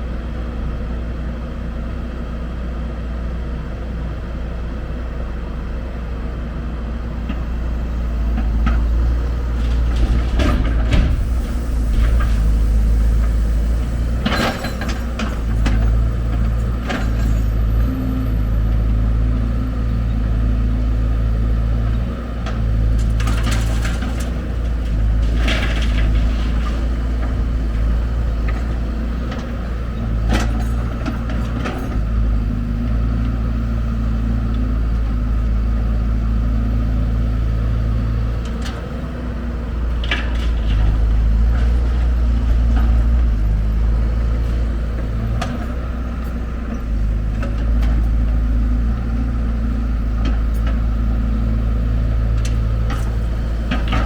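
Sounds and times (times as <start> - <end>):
heavy diesel engine running: 0.0 - 54.0
clattering or hissing noises: 9.6 - 13.4.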